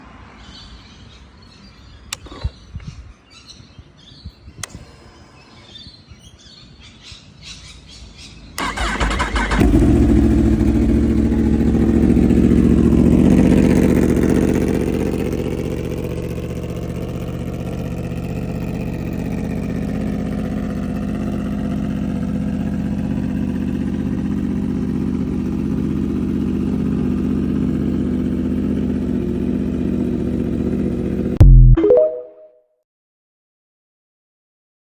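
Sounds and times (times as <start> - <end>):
motorcycle engine idling: 7.7 - 31.4
motorcycle starter cranking: 8.6 - 10.5.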